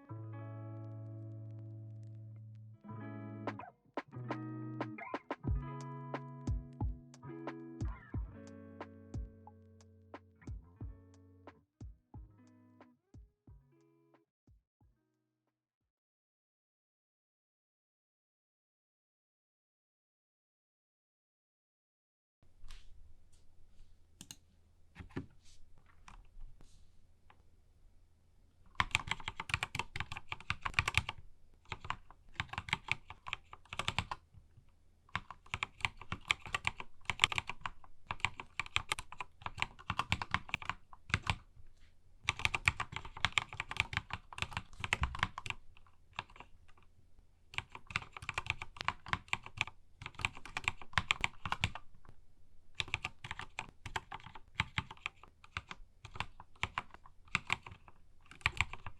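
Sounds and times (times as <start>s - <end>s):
mechanical keyboard typing: 28.8s - 34.2s, 35.2s - 41.4s, 42.3s - 46.5s, 47.6s - 51.8s, 52.8s - 58.9s.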